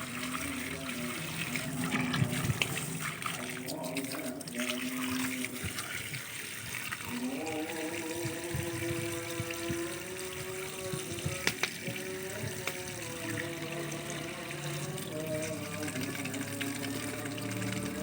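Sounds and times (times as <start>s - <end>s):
water splashing: 0.0s - 18.0s
background music: 7.1s - 18.0s.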